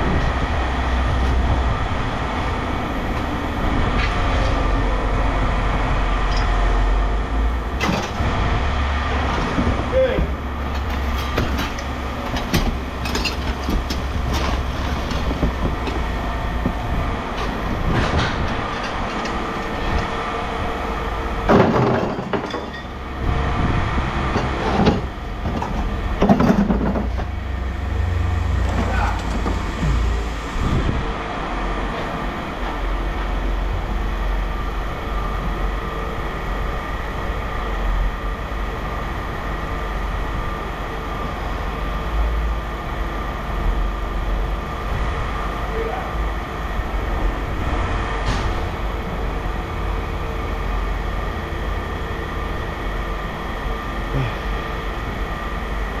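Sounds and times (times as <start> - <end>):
heavy engine rumbling: 0.0 - 56.0
knocks and clanks: 7.8 - 8.4, 9.2 - 20.1, 21.4 - 23.0, 24.3 - 27.3.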